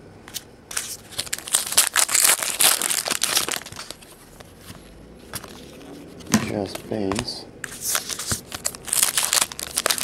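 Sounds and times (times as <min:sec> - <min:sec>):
wrapper tearing and crinkling: 0:01.1 - 0:04.0, 0:07.9 - 0:10.0.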